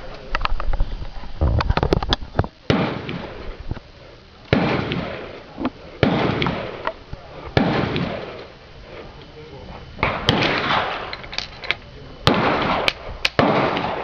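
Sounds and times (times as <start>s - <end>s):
gunshots with echo: 4.5s - 5.3s, 6.0s - 6.8s, 7.6s - 8.4s, 10.0s - 11.1s, 12.3s - 14.0s.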